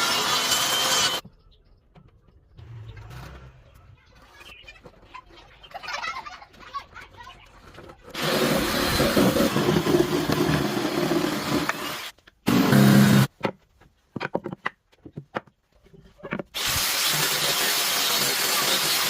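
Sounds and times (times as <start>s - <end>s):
woodworking power tool running: 0.0s - 1.2s, 8.2s - 13.3s, 16.6s - 19.0s.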